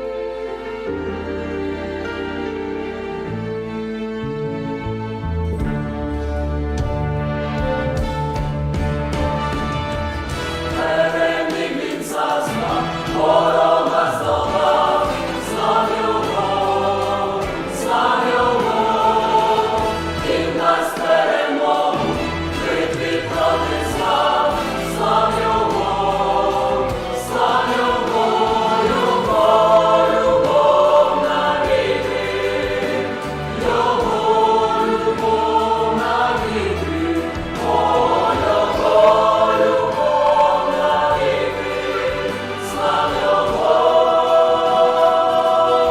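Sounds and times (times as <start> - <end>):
youth choir singing a hymn: 10.3 - 45.9.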